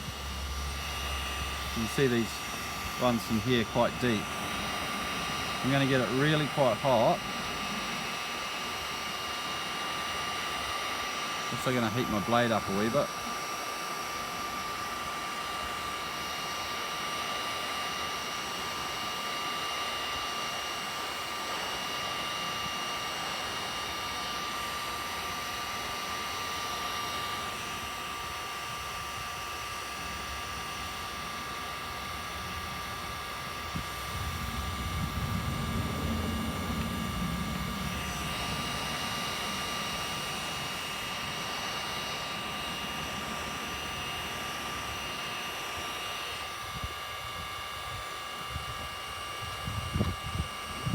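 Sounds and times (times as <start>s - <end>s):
low rumble: 0.0s - 9.4s, 30.2s - 45.7s
heat gun fan whine: 0.0s - 50.9s.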